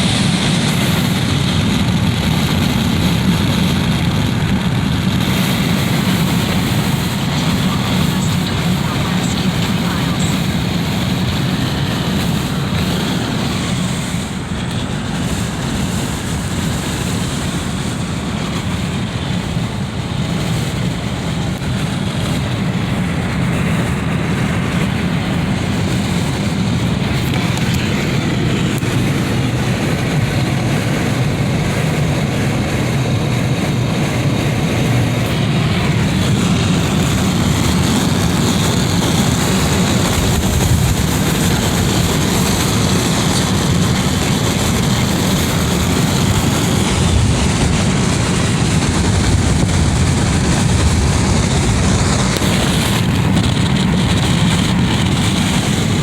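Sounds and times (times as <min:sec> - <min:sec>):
wind blowing through window: 0:00.0 - 0:56.0.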